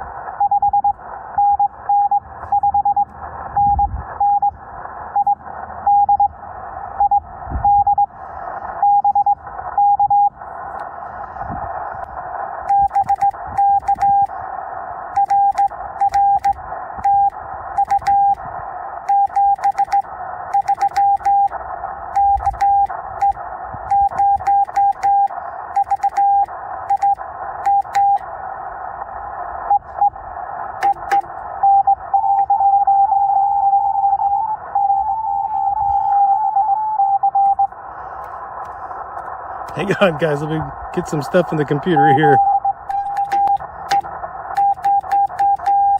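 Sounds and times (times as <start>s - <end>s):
radio band noise hiss: 0.0s - 45.9s
morse code tone: 8.8s - 10.4s, 12.7s - 14.3s, 15.2s - 18.4s, 19.1s - 28.2s, 30.8s - 37.7s, 39.7s - 45.9s
sharp clicks: 12.7s - 14.3s, 15.2s - 18.4s, 19.1s - 21.6s, 22.2s - 28.3s, 30.8s - 31.4s, 42.9s - 45.9s.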